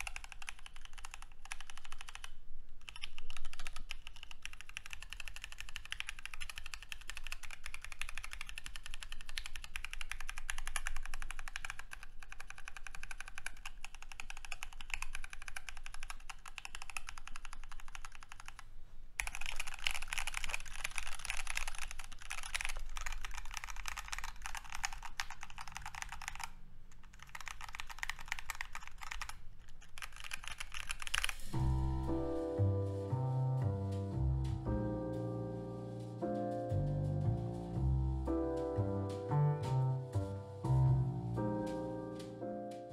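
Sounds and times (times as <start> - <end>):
typing on mechanical keyboard: 0.0 - 18.6, 19.2 - 31.6
piano music: 31.5 - 42.9.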